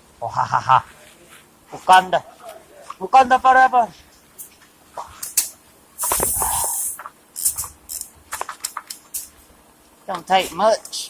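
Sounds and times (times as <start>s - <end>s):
spray hiss: 5.2s - 7.8s
tools clicking and knocking: 5.2s - 9.4s.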